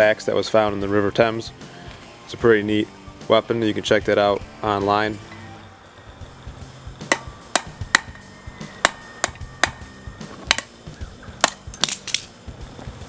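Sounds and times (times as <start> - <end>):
hammer tapping chisel on metal: 7.1 - 8.2, 8.8 - 9.8, 10.5 - 10.7.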